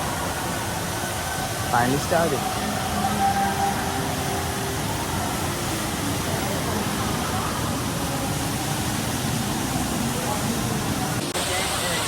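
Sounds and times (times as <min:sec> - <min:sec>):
indoor waterfall pouring: 0:00.0 - 0:12.0.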